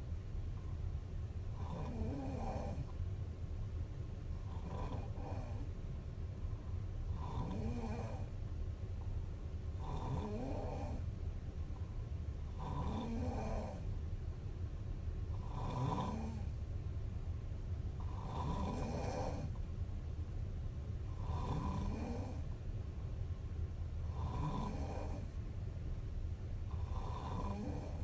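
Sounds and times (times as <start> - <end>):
steady low hum: 0.0 - 28.0
woman snoring: 1.5 - 2.9, 4.5 - 5.7, 7.1 - 8.3, 9.8 - 11.1, 12.5 - 13.9, 15.3 - 16.6, 18.0 - 19.6, 21.1 - 22.5, 24.1 - 25.4, 26.7 - 28.0.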